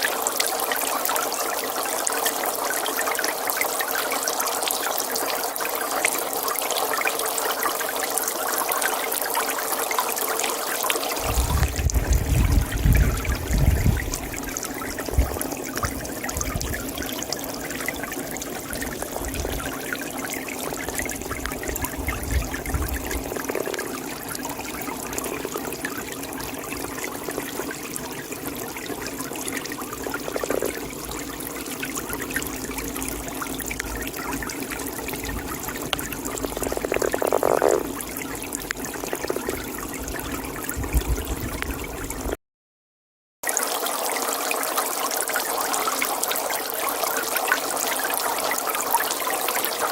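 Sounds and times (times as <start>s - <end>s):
pond water trickling: 0.0s - 42.4s, 43.4s - 49.9s
toad croaking: 20.8s - 24.4s, 30.1s - 31.0s, 35.4s - 39.8s.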